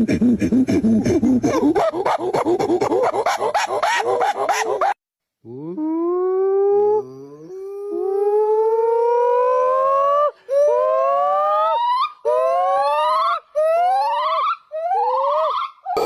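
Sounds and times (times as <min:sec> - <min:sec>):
animal howling: 0:05.8 - 0:16.0.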